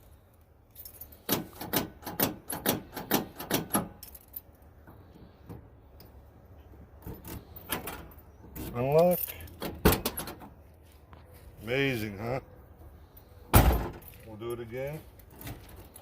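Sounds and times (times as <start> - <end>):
keys jangling: 0.7 - 1.6, 3.4 - 4.6.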